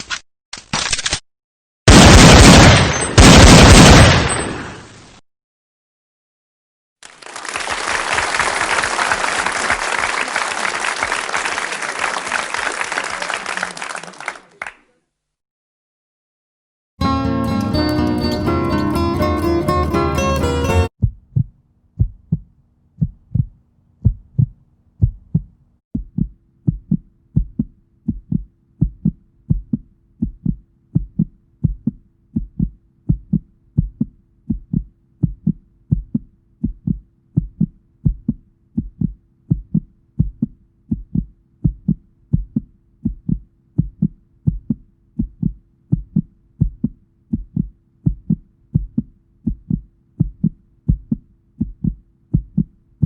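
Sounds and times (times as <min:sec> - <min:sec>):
heartbeat thumps: 0:21.0 - 0:53.0.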